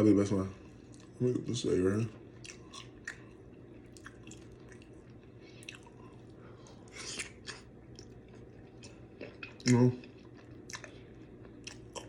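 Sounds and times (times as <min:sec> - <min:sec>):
wet chewing and smacking: 0:00.6 - 0:01.2, 0:02.1 - 0:12.0.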